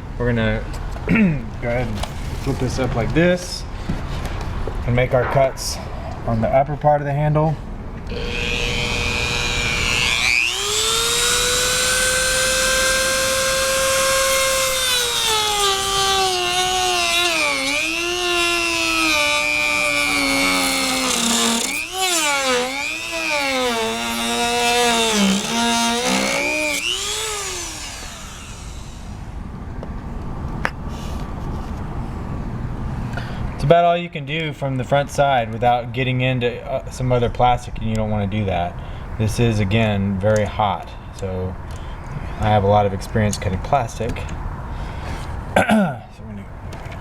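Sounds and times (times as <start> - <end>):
rotary tool cutting plastic: 8.1 - 29.3.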